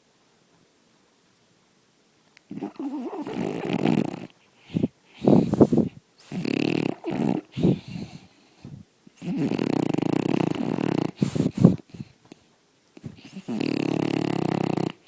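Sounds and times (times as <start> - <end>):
dog snoring loudly: 2.5 - 12.1, 13.0 - 15.0.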